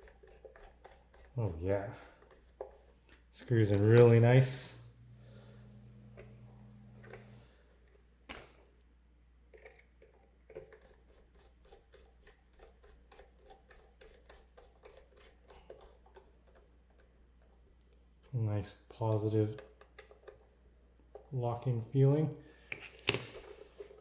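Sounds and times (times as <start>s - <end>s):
low hum: 3.8s - 7.4s.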